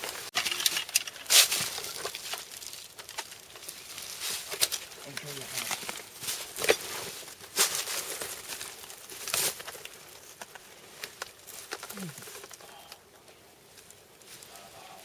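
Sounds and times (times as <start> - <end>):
rustling and crinkling: 0.0 - 15.0.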